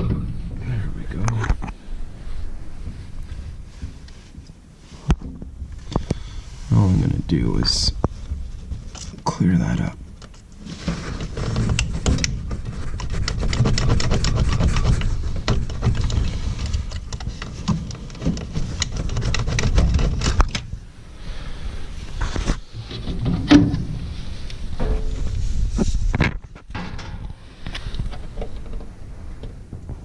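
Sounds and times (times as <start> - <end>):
handling noise near microphone: 0.0 - 30.0
wire scraping and clicking: 10.1 - 20.8.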